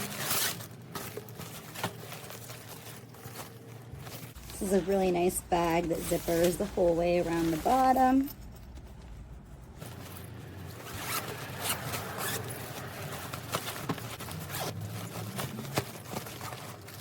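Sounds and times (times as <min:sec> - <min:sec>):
zipper rasping open: 0:09.8 - 0:15.7.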